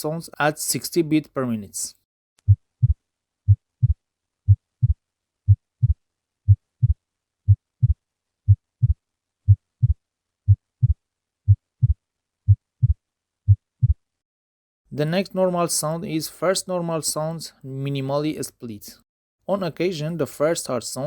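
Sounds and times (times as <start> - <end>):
heartbeat through stethoscope: 2.5 - 14.0.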